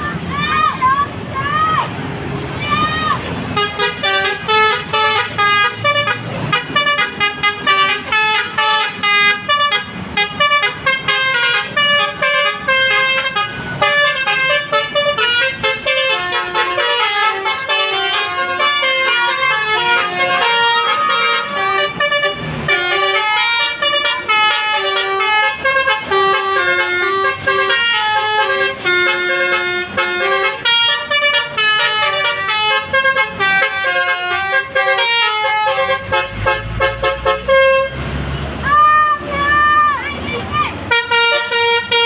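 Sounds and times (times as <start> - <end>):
multi-tone musical bus horn melody: 3.4 - 42.0.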